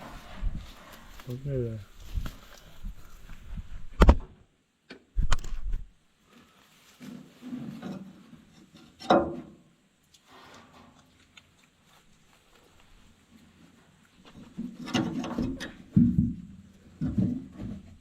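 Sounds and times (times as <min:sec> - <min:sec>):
quiet scuffling: 0:00.0 - 0:04.0, 0:10.0 - 0:15.9
sharp knocks and clunks: 0:09.0 - 0:09.6, 0:14.3 - 0:18.0.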